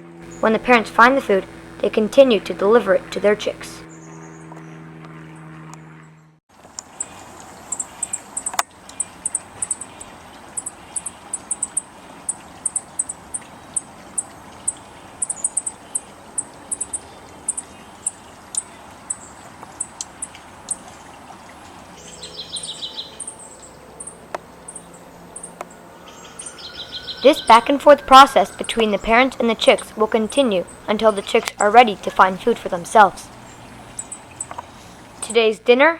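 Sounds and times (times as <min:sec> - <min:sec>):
outdoor hiss: 0:06.6 - 0:23.6, 0:26.6 - 0:35.7
birds chip calls: 0:06.8 - 0:21.0, 0:21.6 - 0:35.4
bird twittering: 0:07.0 - 0:20.8, 0:22.0 - 0:35.4.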